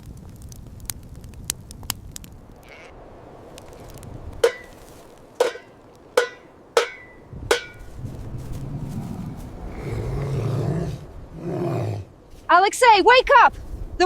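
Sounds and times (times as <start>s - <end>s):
low rumbling noise: 2.4s - 12.4s
hammer knocks with ringing: 4.4s - 4.8s, 5.4s - 7.9s.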